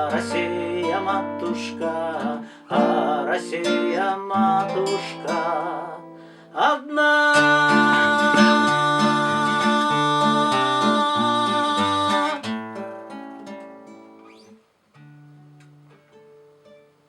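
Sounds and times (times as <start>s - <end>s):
man singing: 0.0s - 12.6s
acoustic guitar strumming: 0.0s - 17.0s.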